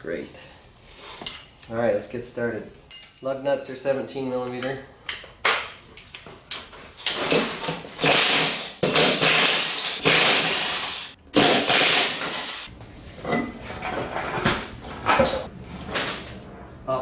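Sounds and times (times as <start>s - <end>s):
impact wrench hammering: 8.0s - 12.7s.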